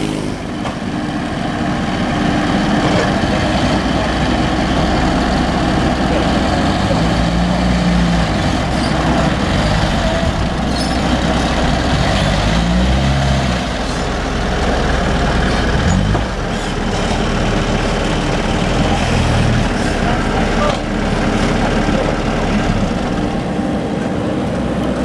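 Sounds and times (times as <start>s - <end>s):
backhoe engine running: 0.0s - 25.0s.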